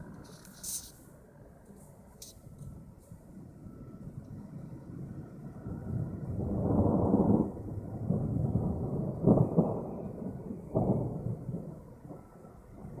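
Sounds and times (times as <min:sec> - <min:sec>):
thunder rumbling: 0:02.8 - 0:13.0
sharp thunder cracks: 0:05.6 - 0:13.0.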